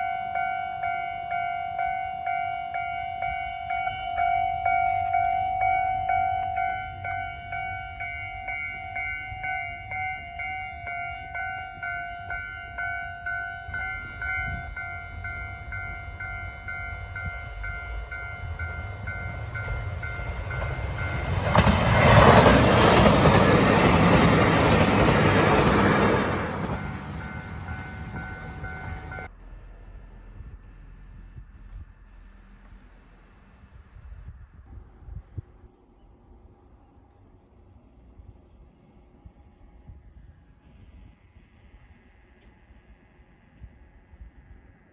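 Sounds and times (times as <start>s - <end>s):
level crossing warning bell ringing: 0.0s - 29.3s
diesel train passing: 0.0s - 34.0s.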